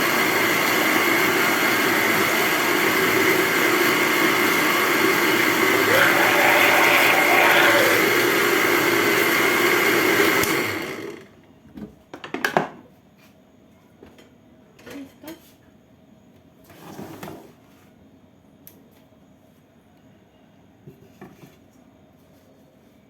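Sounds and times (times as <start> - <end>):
blender running: 0.0 - 11.3.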